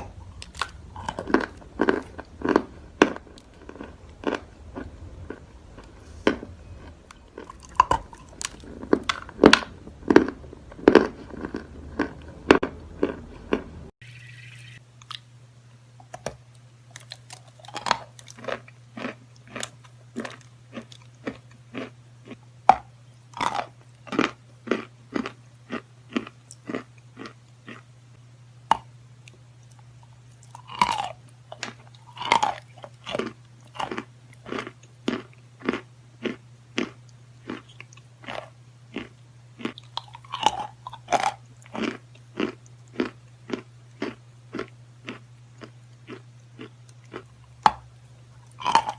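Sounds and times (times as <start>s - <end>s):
low hum: 0.0s - 24.1s.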